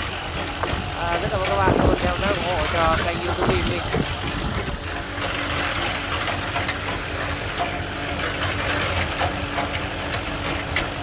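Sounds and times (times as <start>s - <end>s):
engine humming steadily: 0.0s - 11.0s.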